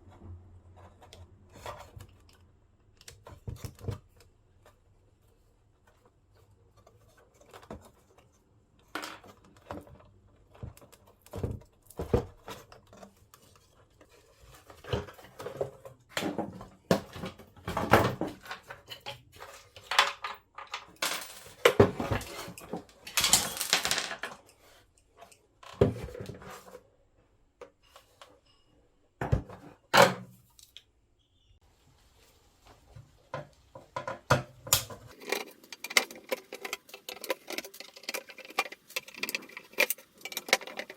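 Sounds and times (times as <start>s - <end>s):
clicks and knocks of handled parts: 5.8s - 26.4s, 33.9s - 40.9s.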